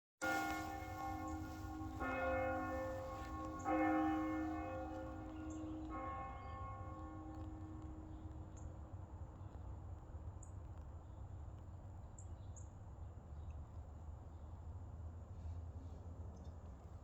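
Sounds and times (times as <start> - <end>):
bells ringing: 0.2 - 7.8.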